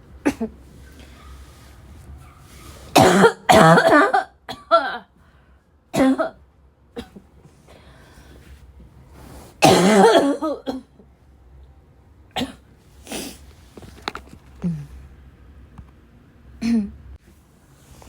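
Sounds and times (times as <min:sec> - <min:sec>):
person coughing: 0:00.2 - 0:00.6, 0:03.0 - 0:05.1, 0:06.0 - 0:06.4, 0:09.6 - 0:10.9, 0:16.6 - 0:17.0
throat clearing: 0:16.6 - 0:17.0.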